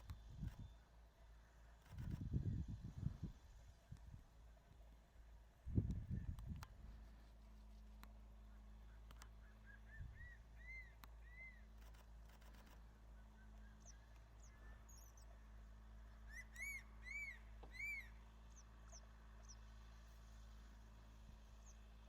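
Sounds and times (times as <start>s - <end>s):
eagle whistled calls: 9.4s - 11.6s, 16.3s - 18.2s.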